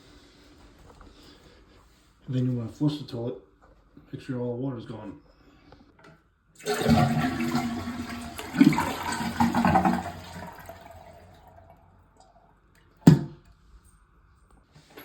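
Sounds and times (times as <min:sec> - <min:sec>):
toilet flushing: 0:06.6 - 0:13.3.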